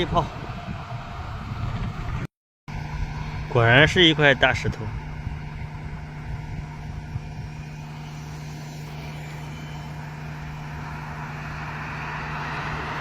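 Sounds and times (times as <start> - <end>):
road traffic low hum: 0.0 - 13.0
vehicle passing: 9.8 - 13.0.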